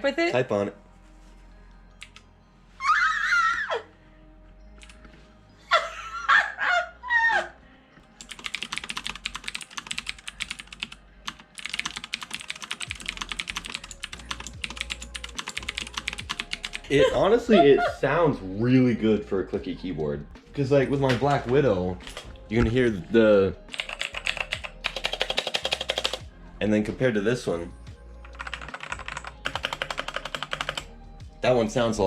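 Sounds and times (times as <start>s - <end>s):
mechanical keyboard typing: 8.2s - 16.8s, 23.7s - 26.2s, 28.3s - 30.9s.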